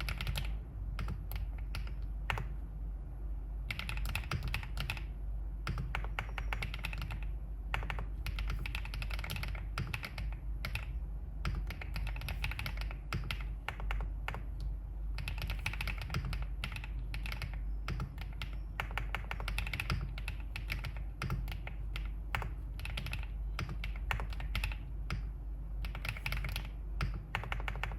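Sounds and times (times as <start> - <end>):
mechanical keyboard typing: 0.0 - 2.6, 3.7 - 27.9.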